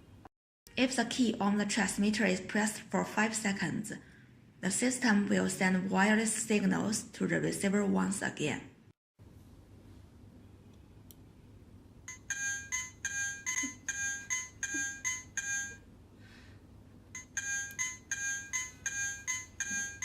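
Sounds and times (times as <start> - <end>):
electronic doorbell chime: 12.1 - 15.8, 17.2 - 20.0.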